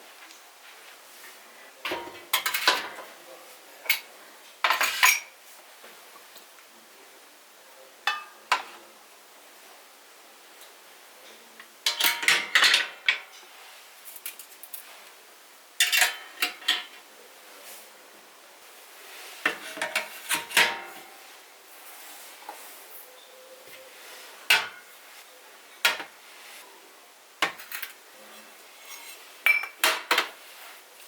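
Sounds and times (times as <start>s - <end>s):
dishes and cutlery clattering: 1.9s - 3.1s, 3.9s - 5.3s, 8.1s - 8.7s, 11.9s - 13.3s, 15.8s - 17.0s, 19.5s - 21.1s, 28.8s - 30.4s.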